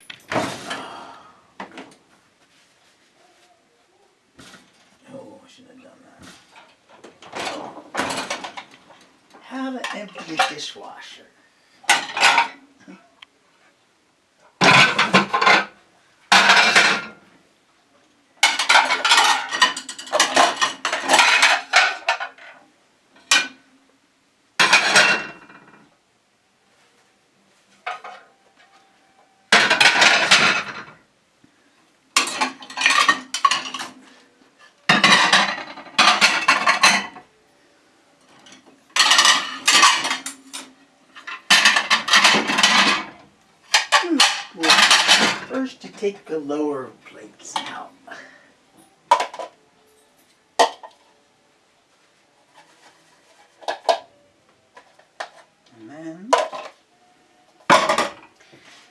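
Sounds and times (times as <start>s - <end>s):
dishes and cutlery clattering: 6.2s - 10.7s, 11.9s - 12.6s, 14.6s - 17.2s, 18.4s - 22.6s, 23.2s - 23.6s, 24.6s - 25.9s, 27.8s - 28.8s, 29.5s - 31.0s, 32.2s - 37.3s, 38.2s - 46.2s, 47.4s - 51.2s, 52.5s - 55.5s, 56.3s - 56.8s, 57.7s - 58.9s.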